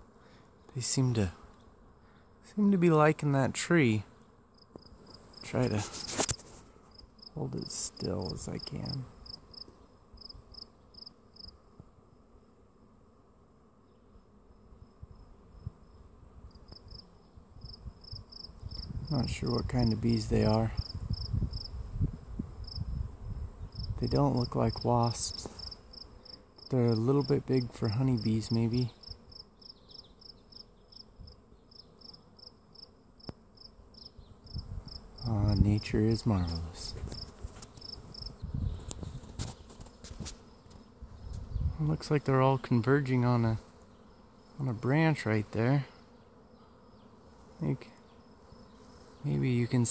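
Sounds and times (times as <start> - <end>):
insect chirping: 8.0 - 11.6, 14.8 - 19.2, 20.8 - 24.2, 25.6 - 39.8.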